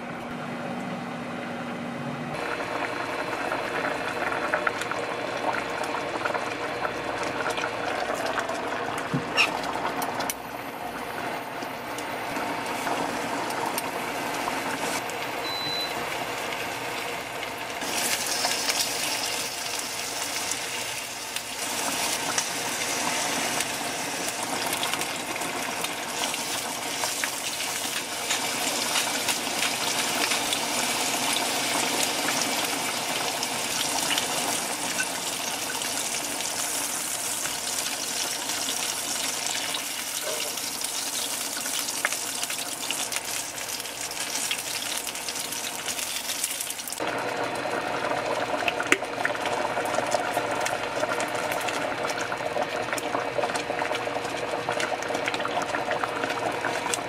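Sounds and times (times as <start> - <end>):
water running: 2.4 - 47.0.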